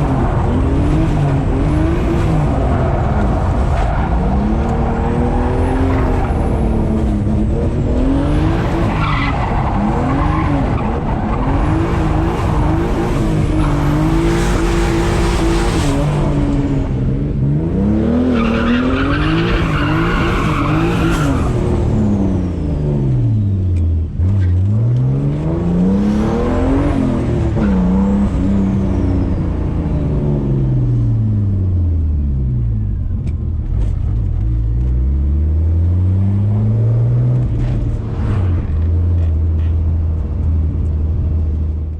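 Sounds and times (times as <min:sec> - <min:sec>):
car engine revving hard: 0:00.0 - 0:23.2, 0:24.6 - 0:30.8.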